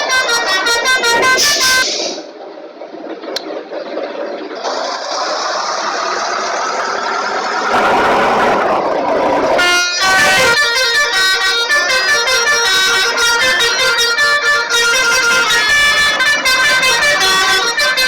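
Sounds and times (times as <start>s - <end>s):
multi-tone bus air horn melody: 0.0s - 2.3s, 9.6s - 18.0s
noisy rush: 0.0s - 18.0s.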